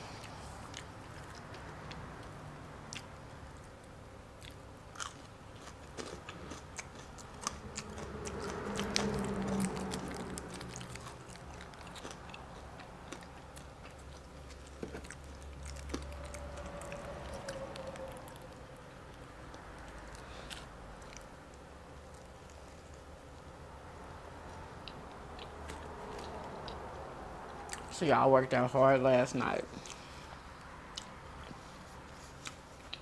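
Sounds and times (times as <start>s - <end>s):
person chewing food: 0.0s - 23.5s, 24.4s - 27.9s, 29.7s - 33.0s
low hum: 6.2s - 27.9s.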